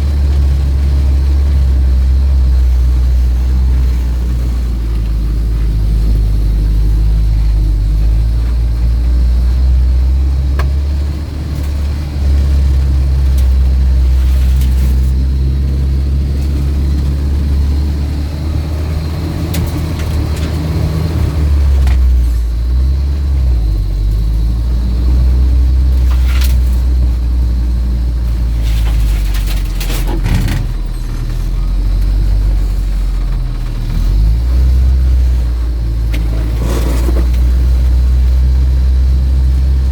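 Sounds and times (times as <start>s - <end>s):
off-road vehicle engine running: 0.0s - 39.9s
knocks and rattles: 28.3s - 31.5s.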